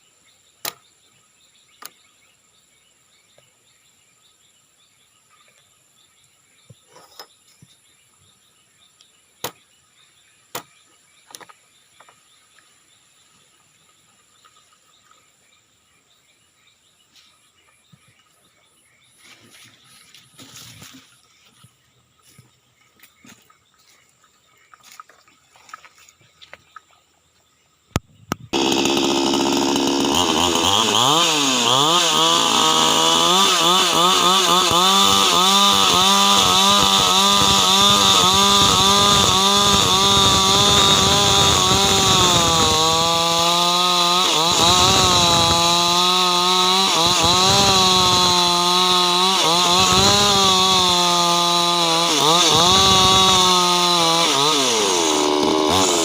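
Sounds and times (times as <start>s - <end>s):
chainsaw cutting wood: 28.4s - 56.0s.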